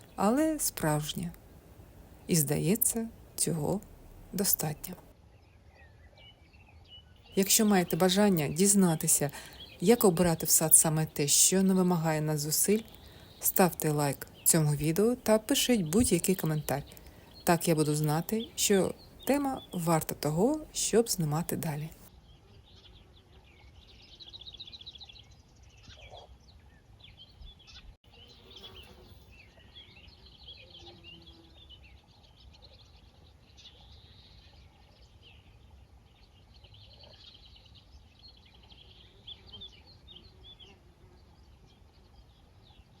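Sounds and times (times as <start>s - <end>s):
low outdoor hum: 0.0s - 5.1s, 7.4s - 22.1s
songbirds chirping and trilling: 0.0s - 43.0s.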